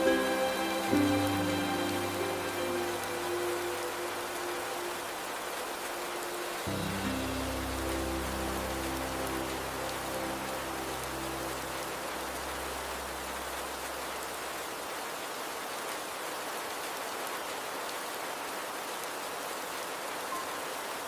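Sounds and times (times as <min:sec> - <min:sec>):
soft sustained music tones: 0:00.0 - 0:14.8
steady rain falling: 0:00.0 - 0:21.0.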